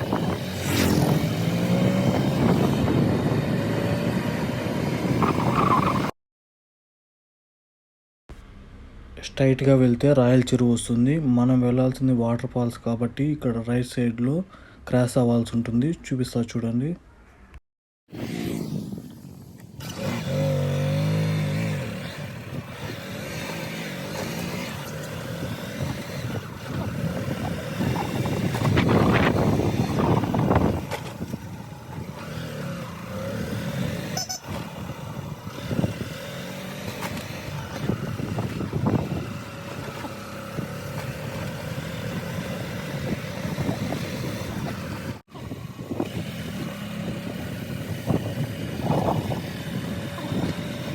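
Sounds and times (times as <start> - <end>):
motorcycle running: 0.0 - 6.1, 18.1 - 50.9
wind noise on microphone: 0.0 - 6.1, 18.1 - 23.1, 24.5 - 36.4, 37.0 - 50.9.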